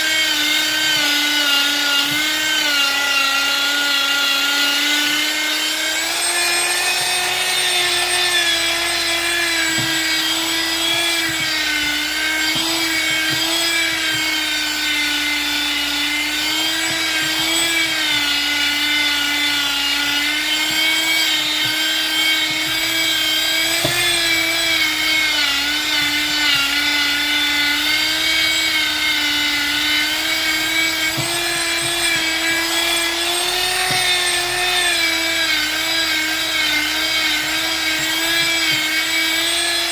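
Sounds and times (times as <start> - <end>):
power tool motor whine on wood: 0.0 - 39.9.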